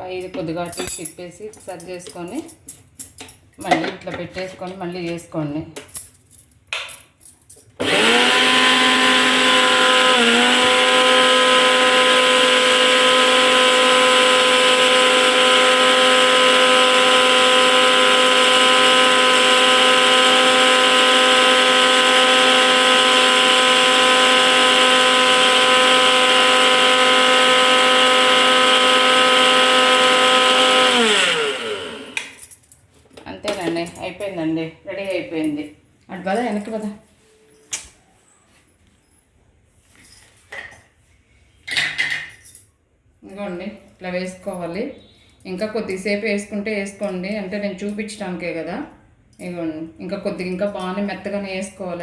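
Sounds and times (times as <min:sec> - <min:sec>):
mixer grinder motor whine: 0:07.8 - 0:32.4.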